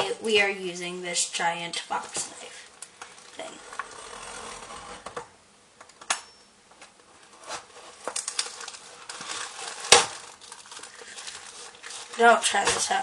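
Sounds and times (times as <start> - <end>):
cardboard box being cut: 3.4 - 5.2.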